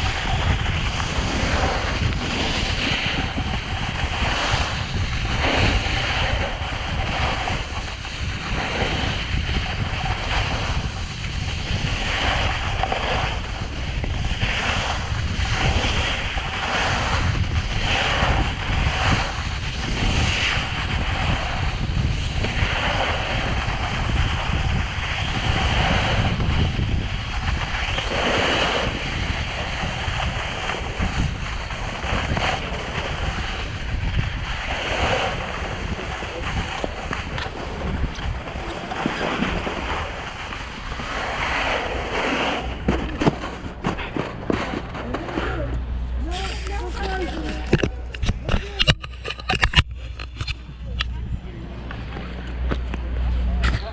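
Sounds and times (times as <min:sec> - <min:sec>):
snowboard edges scraping snow: 0:00.0 - 0:47.8
wind buffeting microphone: 0:00.0 - 0:53.9.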